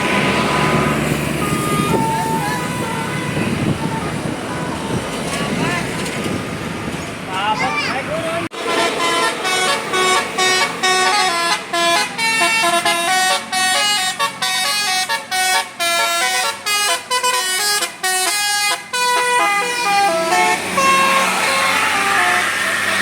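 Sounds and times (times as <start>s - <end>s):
rushing noise: 0.0s - 12.4s
bus musical horn tune: 1.3s - 3.8s, 8.6s - 23.0s.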